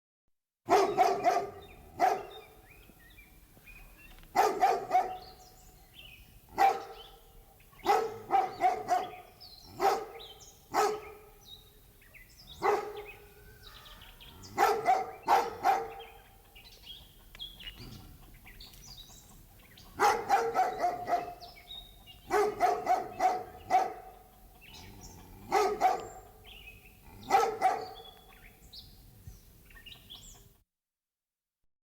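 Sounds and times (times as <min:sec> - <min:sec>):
dog barking: 0:00.7 - 0:02.6, 0:04.3 - 0:05.4, 0:06.5 - 0:07.2, 0:07.8 - 0:11.4, 0:12.5 - 0:16.3, 0:19.8 - 0:28.2
birds chirping: 0:00.7 - 0:30.5.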